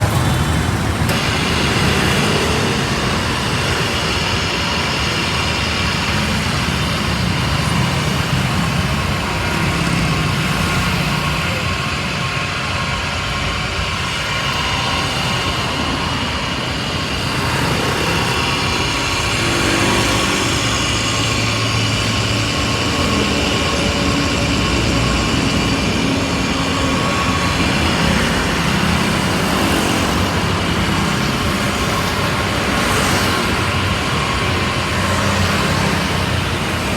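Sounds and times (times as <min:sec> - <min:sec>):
electric motor running: 0:01.1 - 0:12.2.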